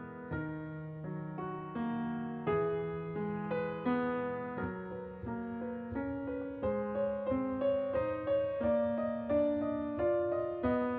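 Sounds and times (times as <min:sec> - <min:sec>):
slow piano melody: 0:00.0 - 0:10.9.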